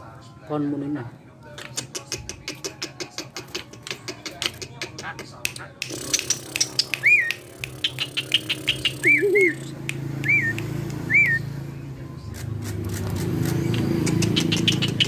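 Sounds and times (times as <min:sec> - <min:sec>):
sharp clicks: 0:01.6 - 0:09.1, 0:12.4 - 0:15.0
bird whistled notes: 0:06.2 - 0:11.5
low engine hum: 0:08.8 - 0:15.0.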